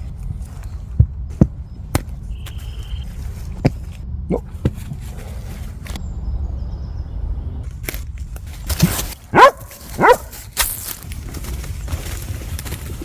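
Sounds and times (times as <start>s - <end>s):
steady low rumble: 0.0s - 13.0s
rustling: 7.7s - 13.0s
dog barking: 9.3s - 10.4s.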